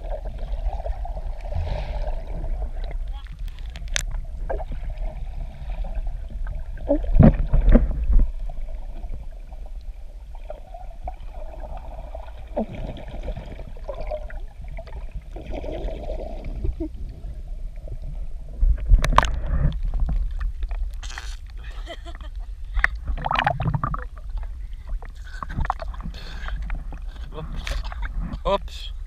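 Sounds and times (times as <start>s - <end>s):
sea water splashing: 19.1s - 28.1s.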